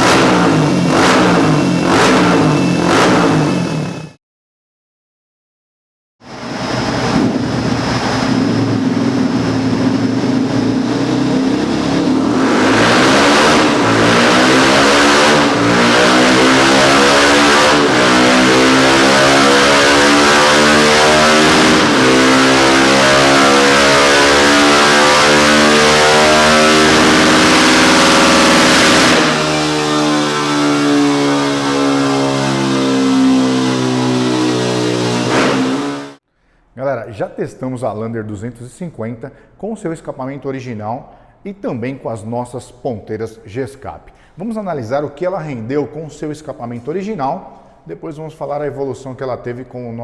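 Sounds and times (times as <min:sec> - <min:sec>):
single-cylinder engine running hard: 0:00.0 - 0:04.1, 0:06.4 - 0:36.2.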